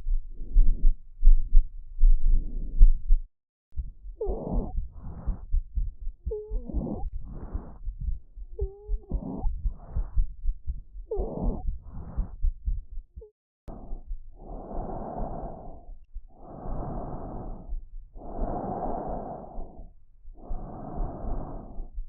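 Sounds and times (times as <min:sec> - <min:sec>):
long even breath sounds: 0:02.0 - 0:03.2, 0:04.2 - 0:12.6, 0:13.7 - 0:22.0.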